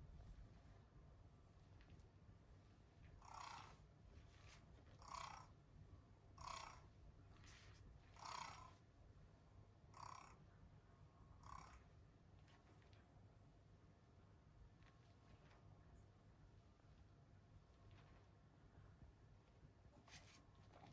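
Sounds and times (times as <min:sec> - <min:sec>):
faint crackles from camera fan: 0:00.0 - 0:05.6, 0:06.4 - 0:20.9.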